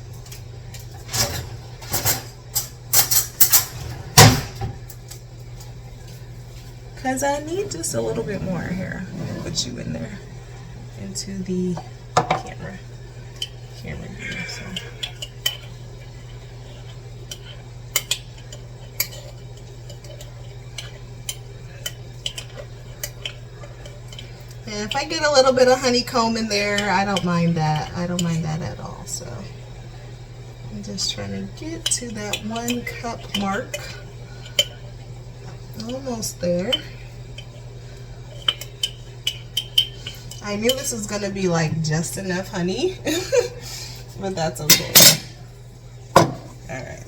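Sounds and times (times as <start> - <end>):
steady low hum: 0.0 - 47.0
kitchen utensils clattering: 0.8 - 4.8, 31.0 - 37.6, 44.5 - 45.4.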